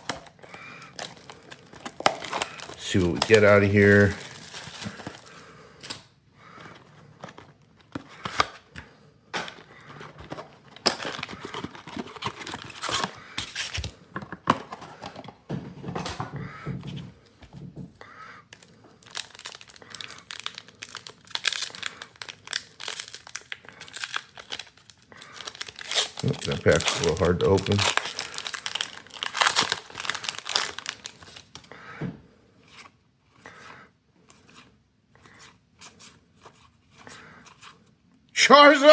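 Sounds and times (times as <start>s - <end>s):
foil wrapper crinkling: 0.0s - 6.0s, 9.5s - 13.9s, 19.0s - 31.6s
foil wrapper tearing: 0.0s - 6.0s, 10.8s - 13.9s, 19.0s - 31.6s.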